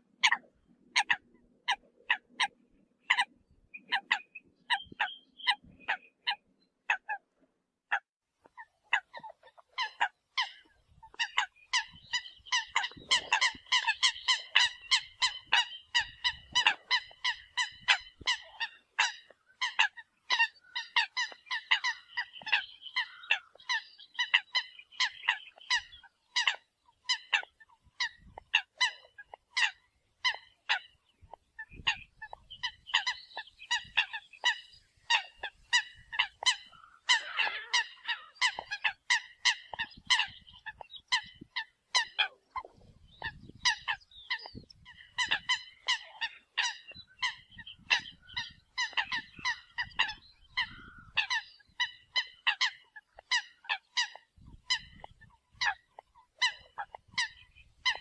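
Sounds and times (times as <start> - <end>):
coots honking: 31.8 - 41.4.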